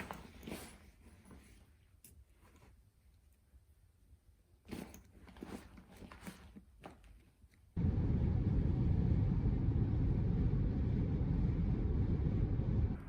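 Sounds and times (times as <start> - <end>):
soft clicks and rustles: 0.0 - 3.8, 4.6 - 7.8
car driving on road: 7.8 - 13.0.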